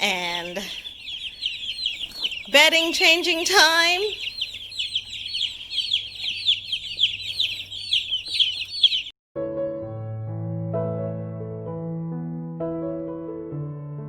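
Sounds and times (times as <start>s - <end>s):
baby chicks peeping: 0.0s - 9.1s
soft piano music: 9.4s - 14.0s.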